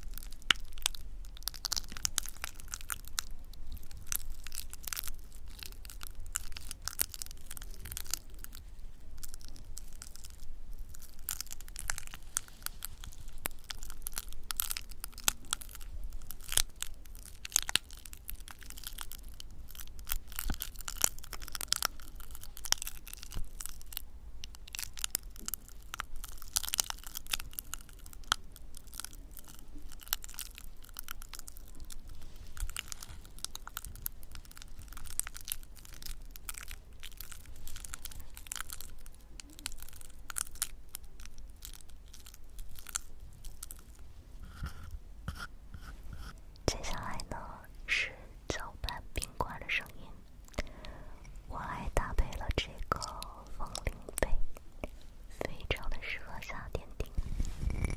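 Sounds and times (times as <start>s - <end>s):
crackling and crunching objects: 0.0s - 57.9s.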